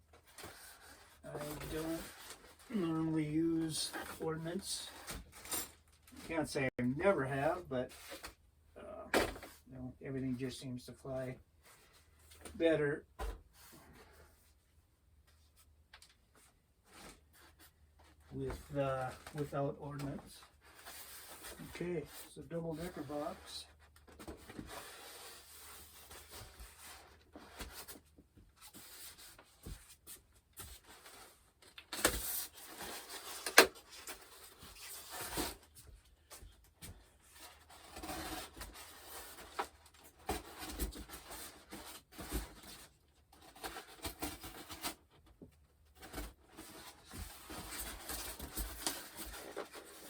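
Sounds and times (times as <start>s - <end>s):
cardboard packaging rubbing and scraping: 20.0s - 36.0s, 37.0s - 45.1s, 46.0s - 50.0s.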